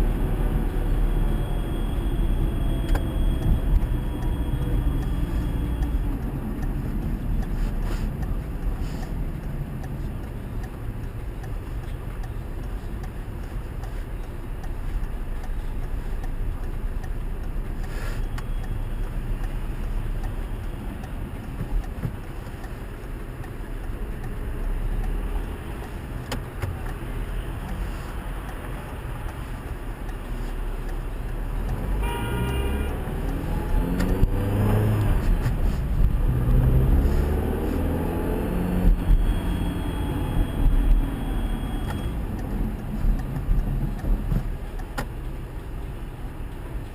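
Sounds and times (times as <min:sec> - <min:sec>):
car road and drivetrain rumble: 0:00.0 - 0:46.9
short pitched tone: 0:00.8 - 0:05.8, 0:38.5 - 0:42.2.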